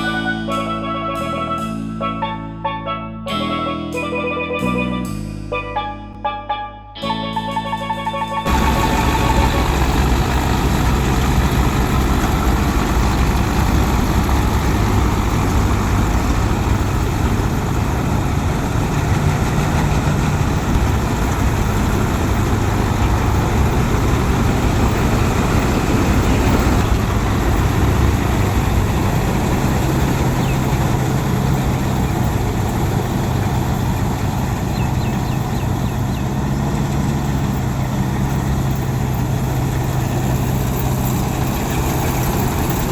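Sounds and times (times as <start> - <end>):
diesel engine running: 7.8 - 42.9.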